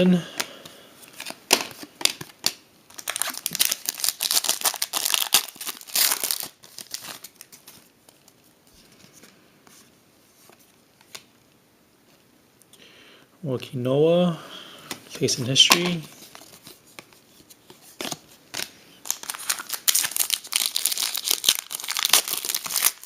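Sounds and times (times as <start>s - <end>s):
card pack wrapper tearing and crinkling: 1.1s - 7.9s, 17.9s - 23.0s.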